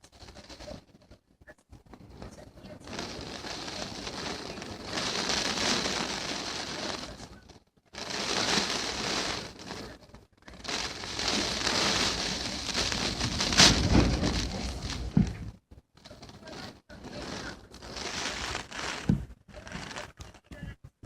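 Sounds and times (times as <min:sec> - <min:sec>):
rain rattling on glass: 0:00.0 - 0:01.2, 0:01.8 - 0:20.7
wind gusts against window: 0:10.6 - 0:20.7.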